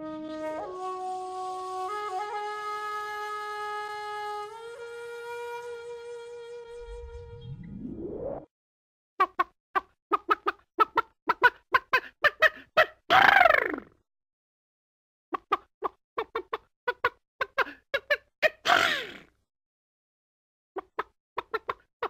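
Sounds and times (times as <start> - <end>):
chicken clucking: 9.2 - 13.0, 15.4 - 18.6, 20.8 - 21.8
chicken sneezing burst: 18.6 - 19.3.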